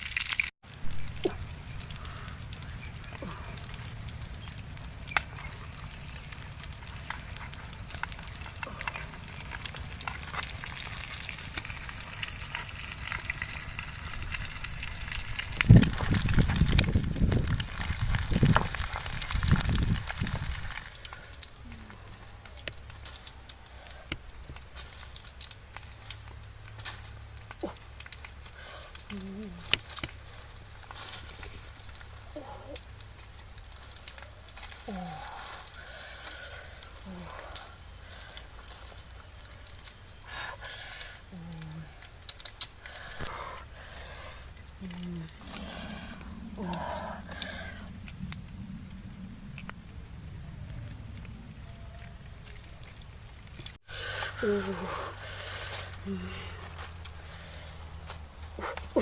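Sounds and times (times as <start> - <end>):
food sizzling in a pan: 0.0 - 1.8, 3.8 - 21.0.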